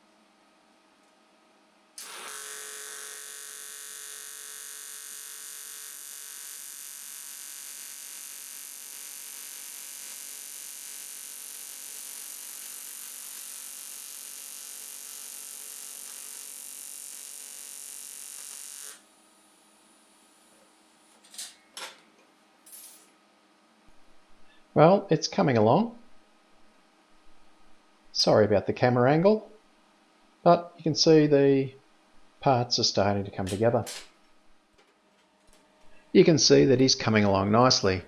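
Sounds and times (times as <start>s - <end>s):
welding arc buzzing with hiss: 2.0s - 21.6s.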